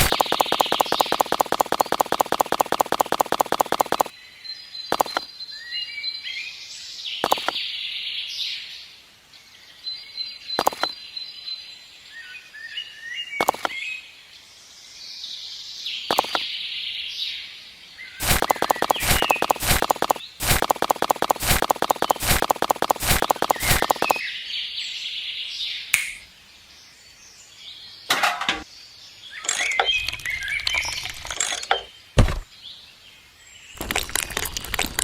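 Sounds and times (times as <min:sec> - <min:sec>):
sharp clicks: 0:00.0 - 0:04.1, 0:04.9 - 0:05.3, 0:07.2 - 0:07.6, 0:10.6 - 0:10.9, 0:13.4 - 0:13.8, 0:16.1 - 0:16.4, 0:18.2 - 0:24.2
bird chirps and calls: 0:29.2 - 0:32.0.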